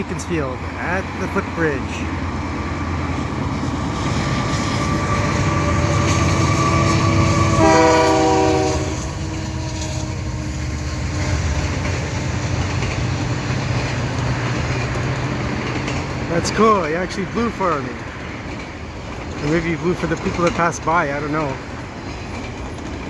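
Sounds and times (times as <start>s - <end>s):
diesel locomotive rumble: 0.0s - 23.0s
train horn blast: 4.6s - 11.4s.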